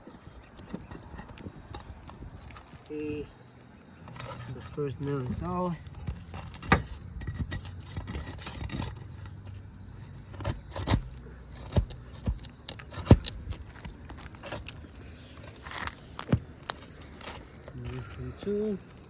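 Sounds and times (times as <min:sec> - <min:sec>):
metal clicks and scrapes of nails: 0:05.8 - 0:17.8.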